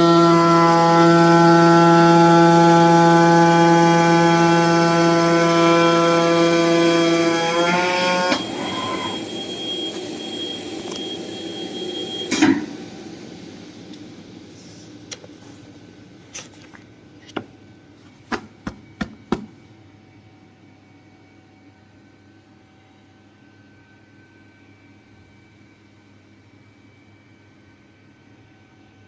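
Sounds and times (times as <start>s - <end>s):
foam-cutting machine humming: 0.0s - 14.9s.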